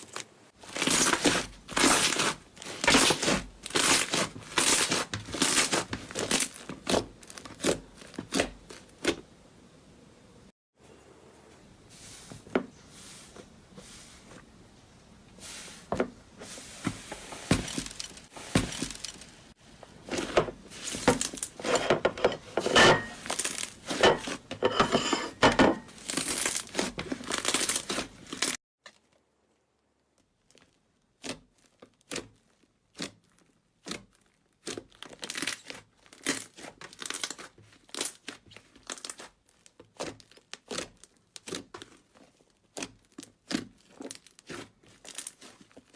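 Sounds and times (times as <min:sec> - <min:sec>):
slime crackling and popping: 0:26.7 - 0:45.9.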